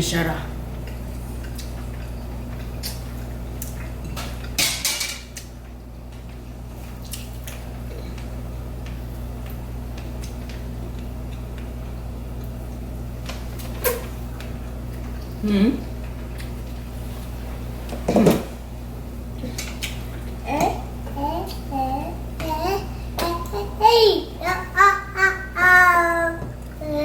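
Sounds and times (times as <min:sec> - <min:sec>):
steady low hum: 0:00.0 - 0:27.0
dishes clinking: 0:04.1 - 0:05.4.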